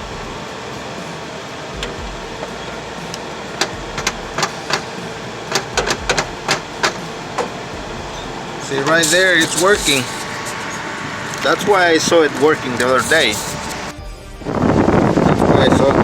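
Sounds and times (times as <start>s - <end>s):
car engine idling: 0.0s - 13.9s
sharp irregular clicks and taps: 5.5s - 7.5s.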